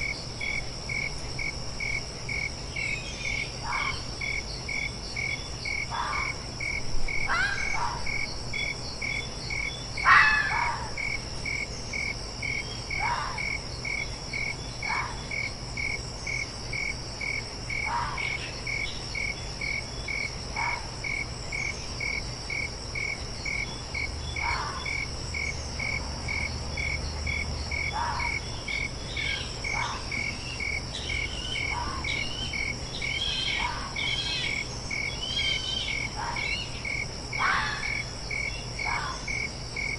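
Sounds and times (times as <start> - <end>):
crickets chirping: 0.0 - 39.9
high insect drone: 0.0 - 39.9
fox barking: 7.2 - 8.1, 10.0 - 11.0, 13.0 - 13.4, 14.9 - 15.2, 17.8 - 18.4, 20.5 - 21.0, 27.9 - 28.5, 29.4 - 30.3, 33.5 - 34.0, 36.1 - 36.7, 37.4 - 38.0, 38.8 - 39.3.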